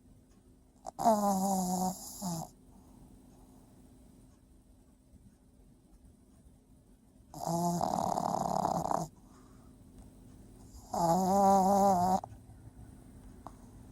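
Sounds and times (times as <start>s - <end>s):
dog snoring: 0.8s - 2.6s, 7.3s - 9.1s, 10.6s - 12.3s
dog breathing quietly: 7.3s - 12.5s.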